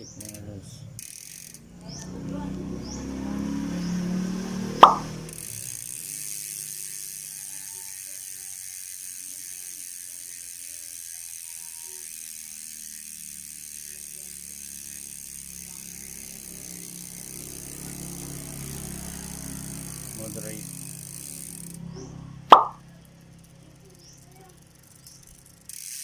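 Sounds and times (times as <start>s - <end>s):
bicycle freehub ratchet clicking: 0.0s - 26.0s.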